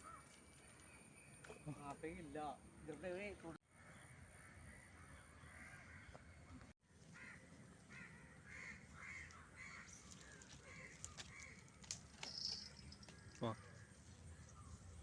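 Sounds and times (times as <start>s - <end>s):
crow cawing faintly: 7.1s - 11.8s.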